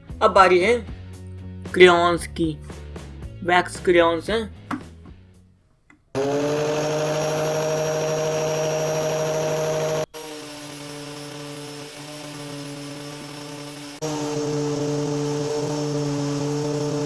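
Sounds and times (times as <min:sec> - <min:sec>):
angle grinder motor whine: 0:06.2 - 0:17.0.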